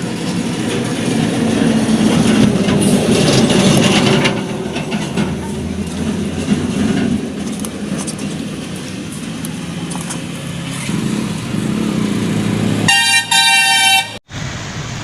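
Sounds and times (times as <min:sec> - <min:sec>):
road traffic rumble: 0:00.0 - 0:15.0
vehicle horn honking: 0:12.9 - 0:14.2.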